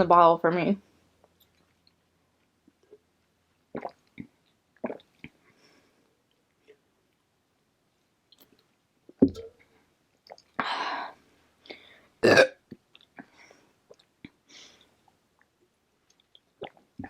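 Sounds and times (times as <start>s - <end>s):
woman burping: 12.2s - 12.6s.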